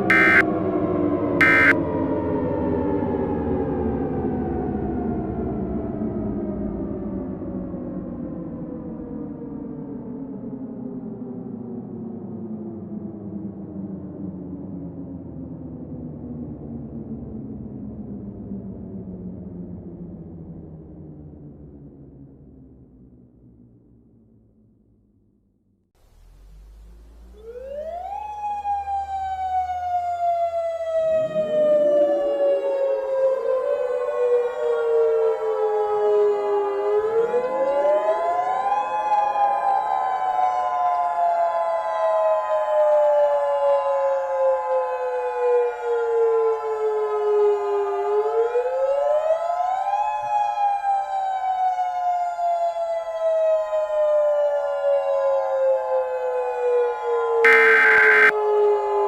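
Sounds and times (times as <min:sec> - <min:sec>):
warning siren wailing: 0:00.0 - 0:00.6, 0:01.4 - 0:01.8, 0:27.3 - 0:30.1, 0:57.5 - 0:58.3
civil defense sirens winding: 0:00.0 - 0:01.8, 0:27.3 - 0:51.8, 0:57.5 - 0:59.0
steady tones: 0:00.1 - 0:00.4, 0:01.4 - 0:01.8, 0:57.5 - 0:58.3.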